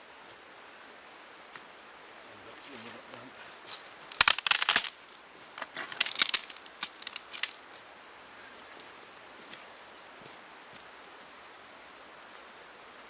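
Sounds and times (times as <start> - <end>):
dry wood cracking: 2.5 - 7.8.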